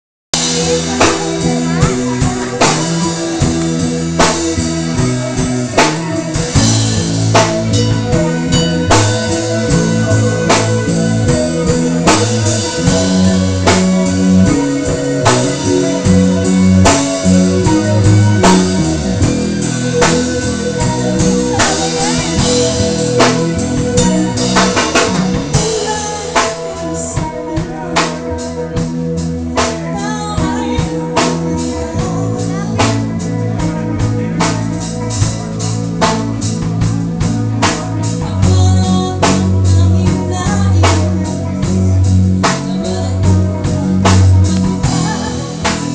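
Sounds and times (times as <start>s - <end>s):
drum kit steady beat: 0.3s - 45.9s
rock band playing: 0.3s - 45.9s.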